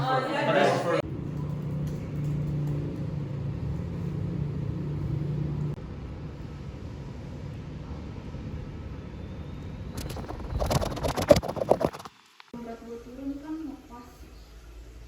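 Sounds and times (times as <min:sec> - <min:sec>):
low hum: 0:01.0 - 0:12.1.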